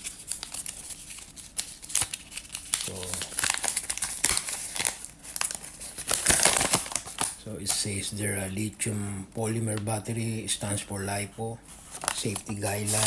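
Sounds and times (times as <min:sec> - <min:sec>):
plastic packaging crinkling: 0:00.0 - 0:07.4, 0:11.8 - 0:13.0.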